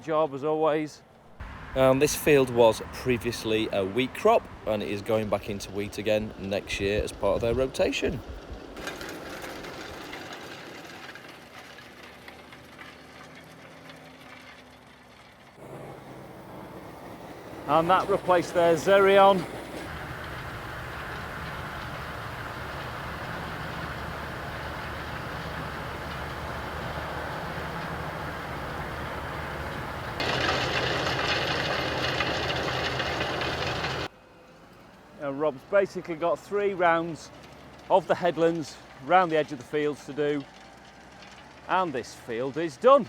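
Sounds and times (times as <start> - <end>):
tractor engine drone: 1.3 - 42.9
mechanical rattling of tracks: 1.8 - 34.1.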